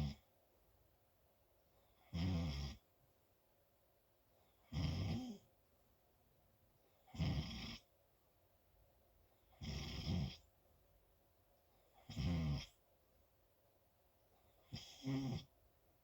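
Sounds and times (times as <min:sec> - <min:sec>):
loud snoring: 0:02.1 - 0:02.8, 0:04.7 - 0:05.4, 0:07.1 - 0:07.8, 0:09.6 - 0:10.4, 0:12.1 - 0:12.7, 0:14.7 - 0:15.5.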